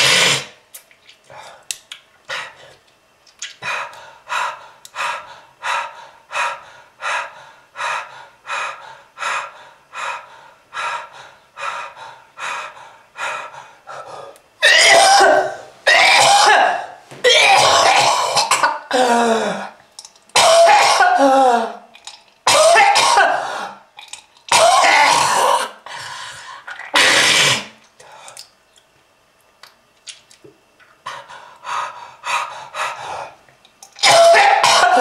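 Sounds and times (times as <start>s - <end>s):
harsh coughing fits: 14.6s - 19.2s, 20.3s - 21.4s, 22.4s - 23.7s, 24.5s - 25.8s, 26.9s - 27.8s, 34.0s - 35.0s
person hacking coughs: 14.6s - 19.2s, 20.4s - 21.3s, 22.5s - 23.5s, 24.5s - 25.7s, 34.0s - 35.0s.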